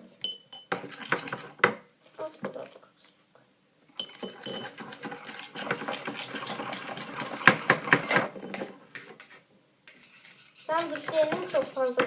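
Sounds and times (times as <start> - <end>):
utensil scraping and tapping container: 4.0 - 12.0.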